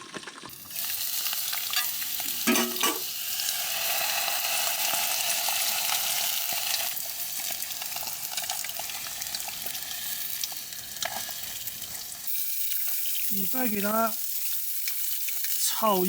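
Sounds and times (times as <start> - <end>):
potatoes sizzling in oil: 0.0 - 16.0
metal clank: 1.8 - 3.0.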